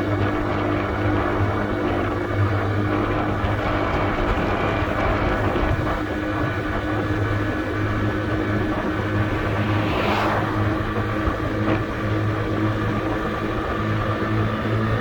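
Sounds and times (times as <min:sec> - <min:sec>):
brief rush of noise: 0:08.4 - 0:11.9.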